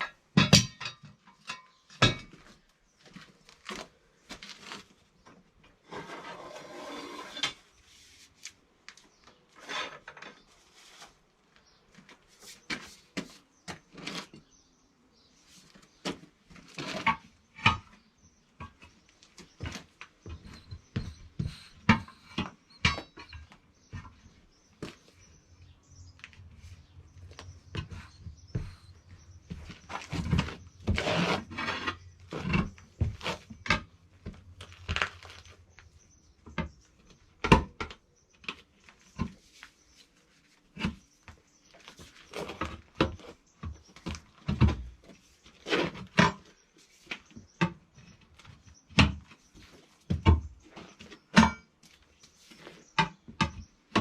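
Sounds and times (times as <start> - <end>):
hand tools knocking and clanking: 0.0 - 2.5, 19.6 - 24.2.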